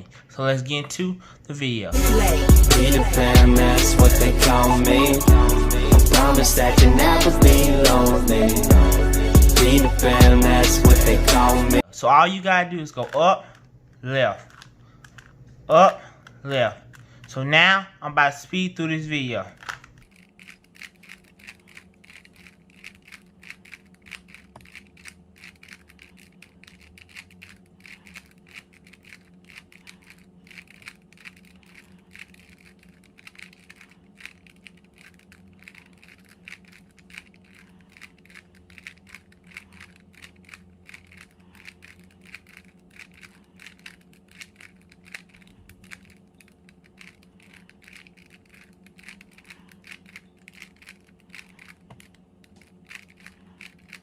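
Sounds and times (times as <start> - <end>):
steady low hum: 0.0 - 54.0
puzzle cube layers clicking: 20.0 - 54.0.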